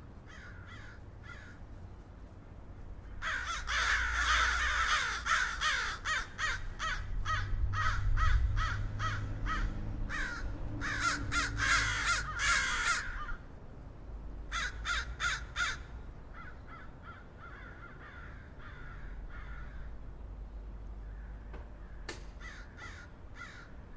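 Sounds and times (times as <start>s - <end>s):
crows cawing: 0.2s - 1.7s, 3.0s - 13.5s, 14.5s - 20.0s, 21.0s - 23.9s.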